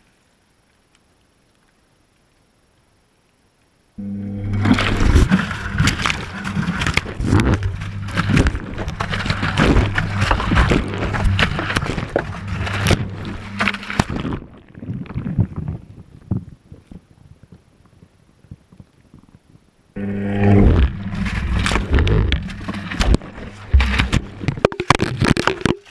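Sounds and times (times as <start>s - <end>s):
washing machine motor humming: 4.0s - 14.3s, 20.0s - 24.6s
wet laundry tumbling and knocking: 4.6s - 15.7s, 20.8s - 25.9s.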